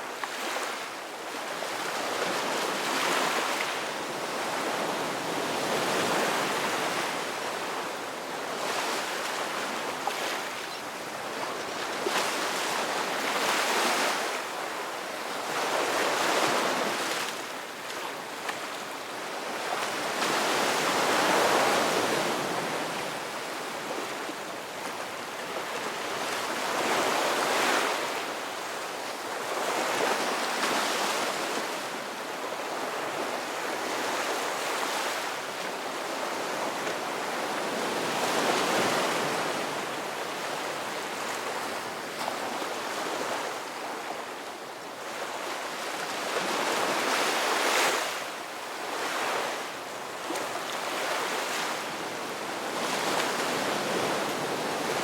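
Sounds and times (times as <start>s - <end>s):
ocean surf waves: 29.5s - 44.3s, 45.2s - 55.0s.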